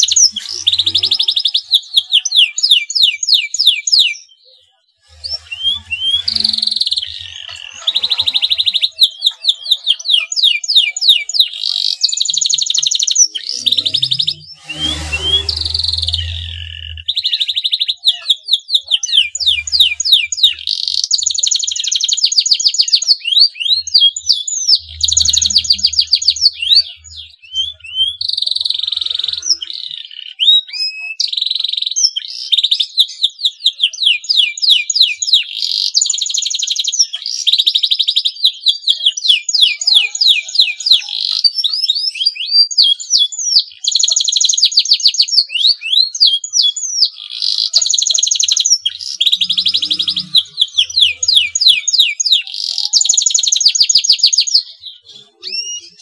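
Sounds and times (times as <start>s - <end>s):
canary singing: 0.0s - 56.0s
low rumble: 13.6s - 17.1s.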